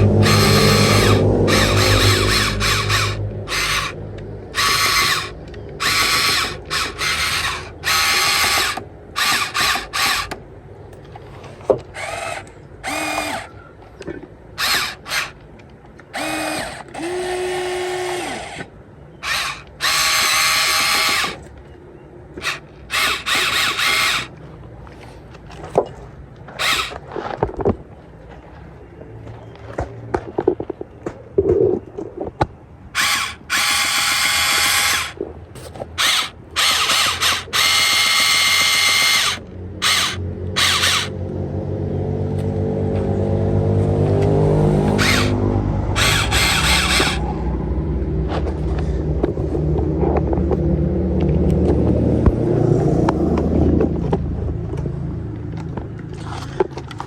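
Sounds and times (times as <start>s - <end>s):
toy excavator electric motors whirring: 0.0s - 21.6s, 22.3s - 24.4s, 26.5s - 27.4s, 32.9s - 41.2s, 44.2s - 47.6s, 55.6s - 57.0s.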